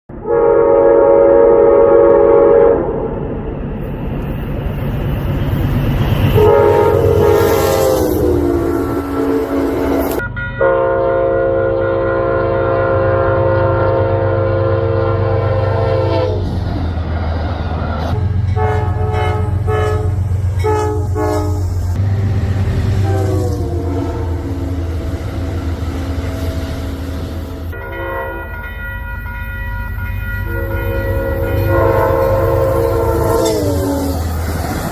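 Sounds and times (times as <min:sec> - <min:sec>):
train rumble: 0:00.1 - 0:34.9
locomotive air horn blasts: 0:00.2 - 0:03.2, 0:06.2 - 0:16.4, 0:18.1 - 0:28.7, 0:30.4 - 0:34.4.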